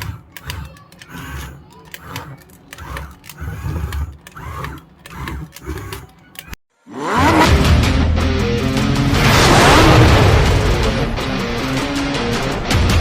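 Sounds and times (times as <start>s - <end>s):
sharp clicks: 0.0s - 6.6s
small electric motors whirring: 0.0s - 6.6s.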